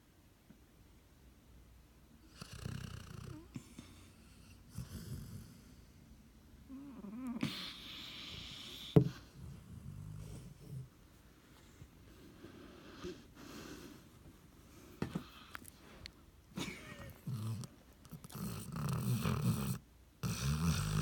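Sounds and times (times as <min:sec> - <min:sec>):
dog snoring: 0:02.2 - 0:06.0, 0:06.7 - 0:10.9, 0:17.2 - 0:21.0.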